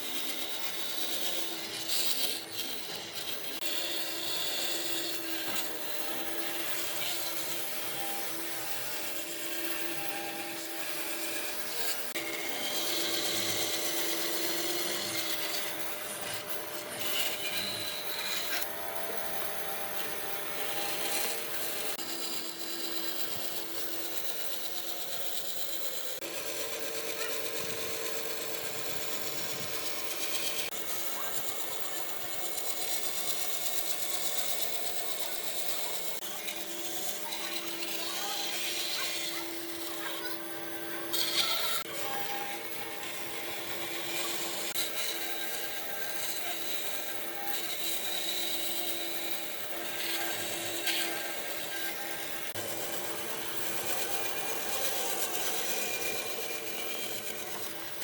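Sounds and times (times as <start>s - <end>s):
woodworking tools cutting wood: 0.0s - 58.0s.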